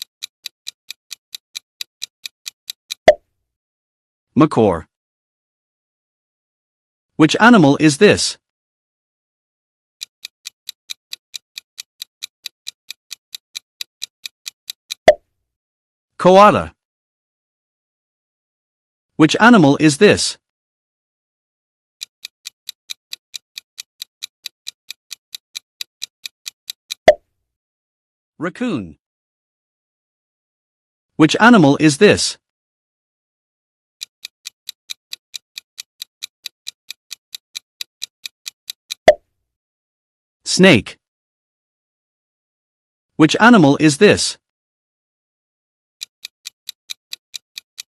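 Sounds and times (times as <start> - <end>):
countdown timer ticking: 10.1 - 15.1, 22.1 - 27.1, 34.0 - 39.2.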